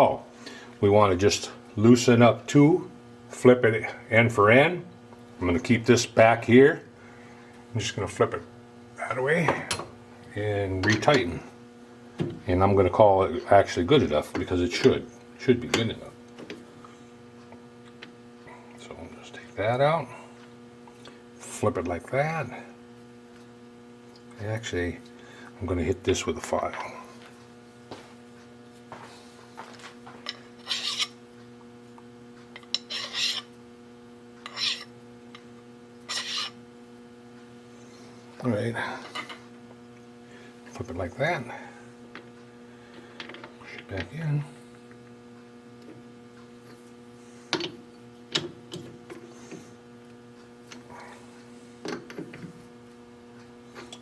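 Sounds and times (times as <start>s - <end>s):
machine hum: 0.0s - 54.0s
file rasping on metal: 30.6s - 31.1s, 32.8s - 33.5s, 34.4s - 34.9s, 36.1s - 36.6s.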